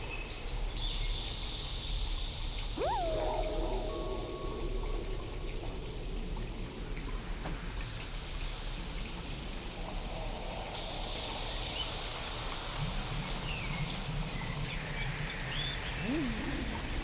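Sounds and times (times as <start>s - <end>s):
gliding warbling tones: 2.8s - 6.2s, 16.0s - 17.0s.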